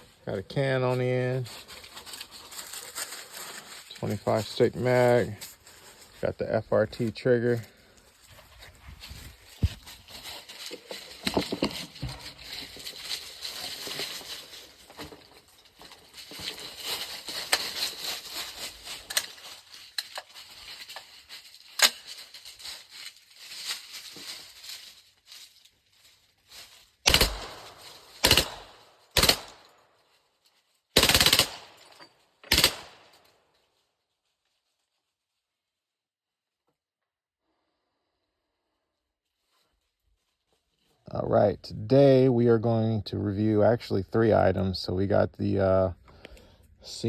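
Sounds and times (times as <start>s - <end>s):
suppressed pistol rapid-fire bursts: 27.1s - 29.6s, 31.0s - 31.7s, 32.5s - 33.0s.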